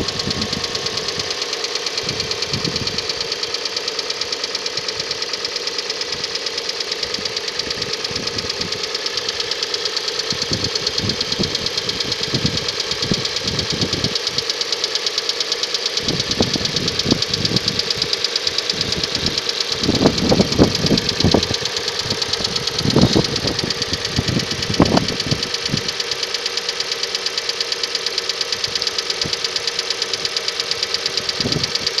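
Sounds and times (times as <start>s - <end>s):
engine idling with ticking: 0.0s - 32.0s
engine knocking: 0.0s - 32.0s.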